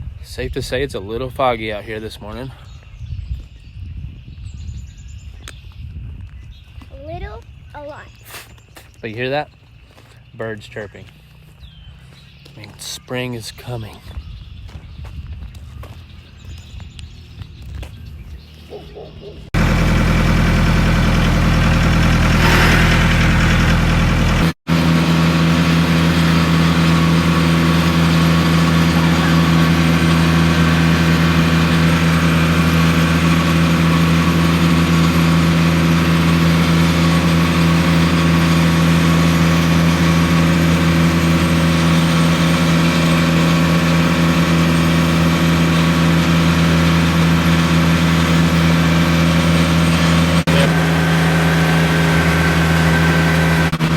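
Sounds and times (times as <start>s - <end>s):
engine humming steadily: 19.4s - 53.9s.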